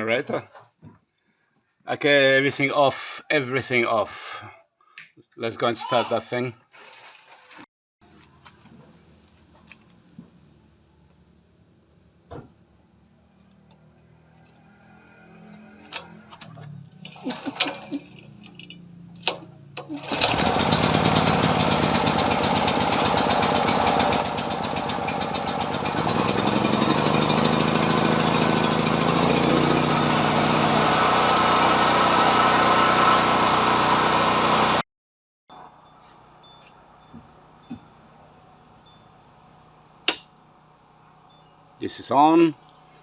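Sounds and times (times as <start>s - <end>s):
generator engine running: 19.2s - 34.8s.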